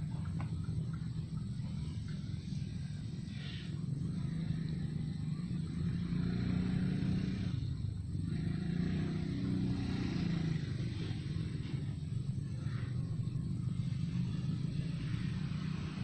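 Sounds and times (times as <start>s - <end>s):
motor engine humming: 0.0s - 16.0s.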